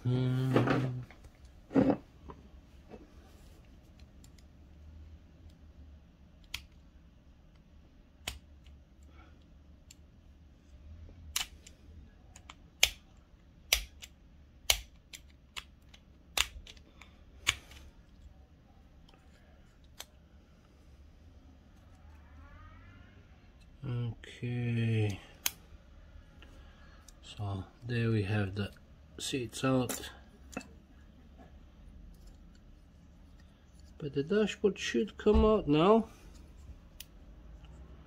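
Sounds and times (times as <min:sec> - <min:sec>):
clicks and taps of small parts: 0:11.2 - 0:18.3.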